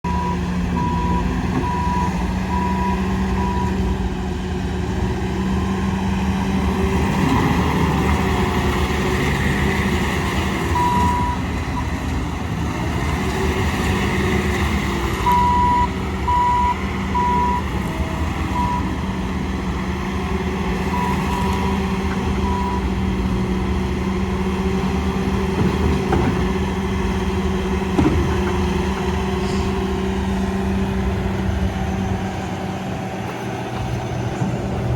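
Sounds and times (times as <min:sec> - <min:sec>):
diesel engine running: 0:00.0 - 0:34.9
backup alarm beeping: 0:15.2 - 0:17.6.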